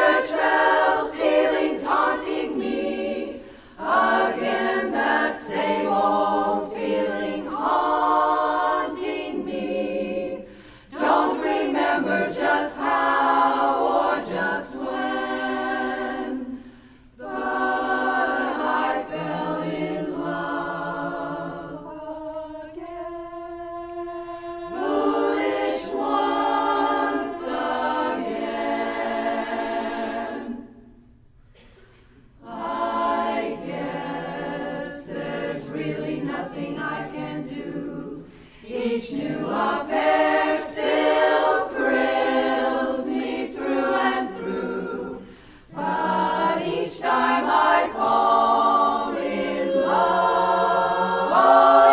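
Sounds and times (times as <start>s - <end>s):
women's chorus singing a cappella: 0.0s - 31.7s, 32.4s - 51.9s.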